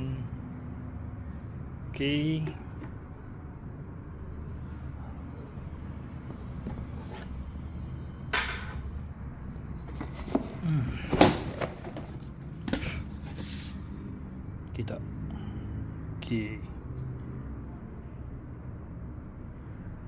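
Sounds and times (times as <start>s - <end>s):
steady low hum: 0.0s - 20.0s
shelf parts knocking: 9.8s - 13.3s.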